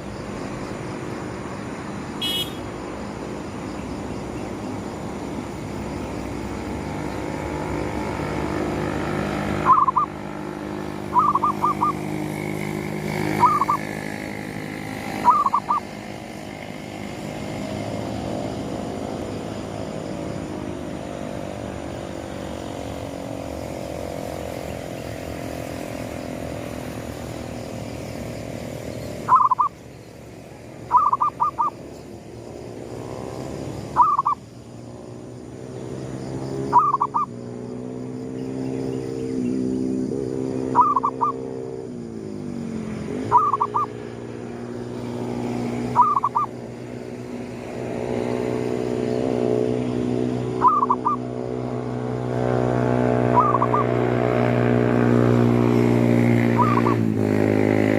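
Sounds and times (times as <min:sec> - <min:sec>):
dove cooing: 0:09.6 - 0:10.2, 0:11.1 - 0:12.2, 0:13.3 - 0:14.0, 0:15.2 - 0:15.9, 0:29.3 - 0:29.7, 0:30.9 - 0:31.7, 0:34.0 - 0:34.4, 0:36.7 - 0:37.3, 0:40.8 - 0:41.4, 0:43.3 - 0:44.0, 0:45.9 - 0:46.5, 0:50.6 - 0:51.2, 0:53.3 - 0:54.0, 0:56.6 - 0:57.0.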